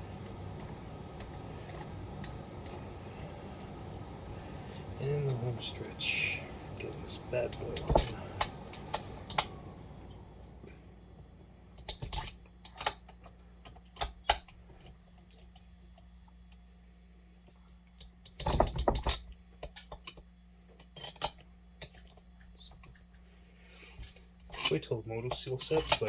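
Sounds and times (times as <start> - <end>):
hand tools and metal parts clinking: 4.7 - 9.6, 11.8 - 14.9, 18.2 - 23.2, 23.9 - 26.0.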